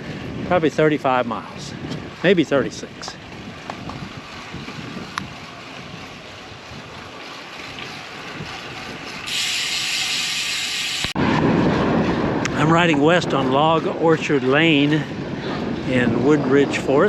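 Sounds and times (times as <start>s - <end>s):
wind rushing over microphone: 0.0s - 7.1s, 11.0s - 17.0s
loud hiss: 9.3s - 11.2s.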